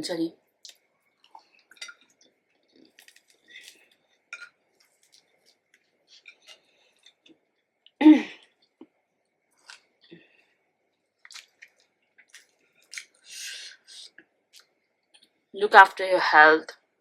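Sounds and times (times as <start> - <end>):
wet chewing mouth noises: 11.2 - 14.8.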